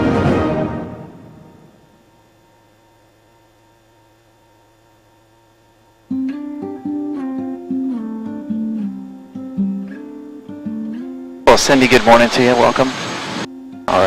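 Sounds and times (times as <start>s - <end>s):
faint steady hum: 0.0s - 14.0s
acoustic guitar plucking: 6.1s - 11.6s.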